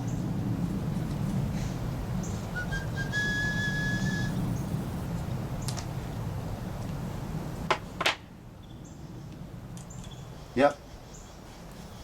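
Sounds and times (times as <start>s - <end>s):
steady low hum: 0.0s - 7.7s.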